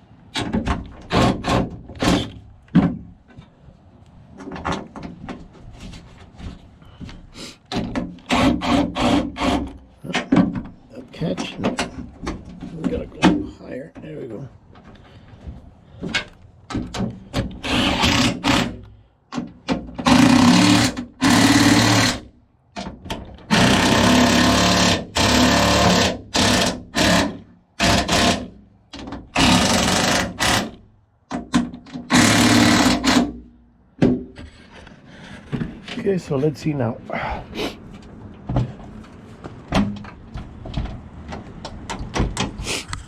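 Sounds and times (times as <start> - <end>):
power drill driving screws: 8.2 - 9.8, 17.5 - 18.9, 20.0 - 22.3, 23.5 - 28.6, 29.4 - 30.8, 32.1 - 33.4.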